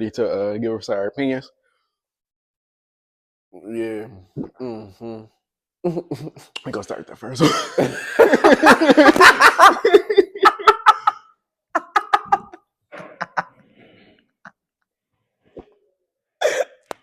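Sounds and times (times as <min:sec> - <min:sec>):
person coughing: 0:16.4 - 0:16.8.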